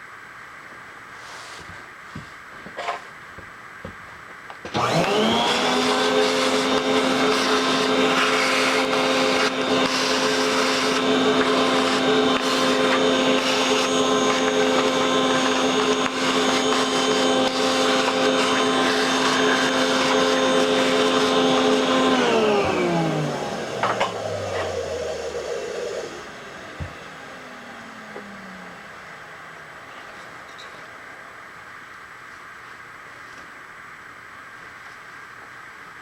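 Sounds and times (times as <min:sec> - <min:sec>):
machine tool electric motor: 0:04.7 - 0:26.1.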